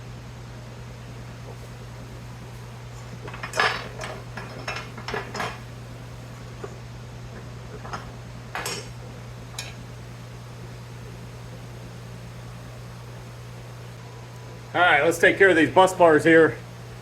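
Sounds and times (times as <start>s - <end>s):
scrap metal clinking and clattering: 3.3s - 5.6s.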